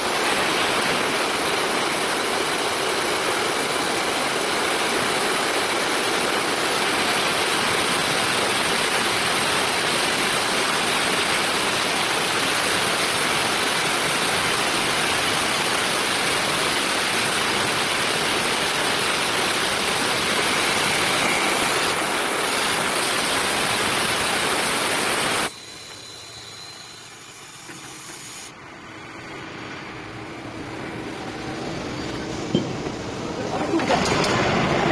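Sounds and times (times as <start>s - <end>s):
circular saw cutting metal pipe: 13.5s - 24.3s.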